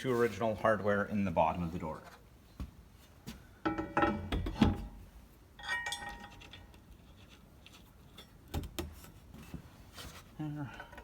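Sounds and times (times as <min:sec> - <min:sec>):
metal knocks and clinks: 0:05.6 - 0:06.8.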